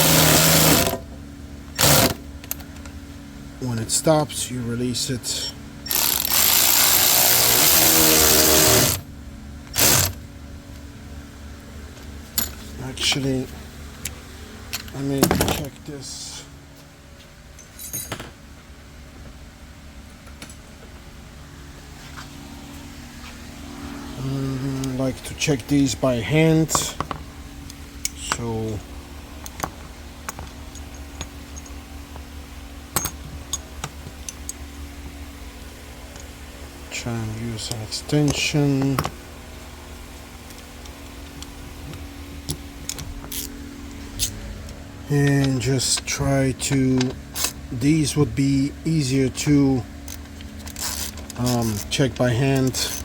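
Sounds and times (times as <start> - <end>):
power ratchet motor running: 0.0 - 2.9, 5.5 - 10.3, 22.5 - 48.3, 49.0 - 53.0
steady low hum: 0.0 - 53.0
metal hand tools clinking: 17.6 - 18.2, 30.3 - 31.8.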